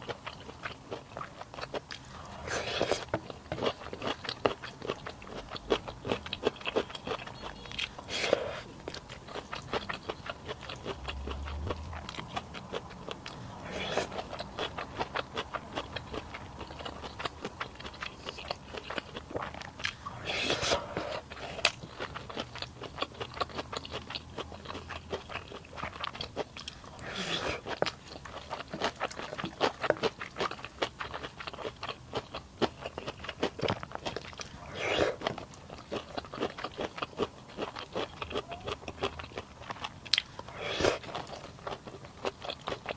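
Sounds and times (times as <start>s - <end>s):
person chewing food: 0.0s - 42.9s.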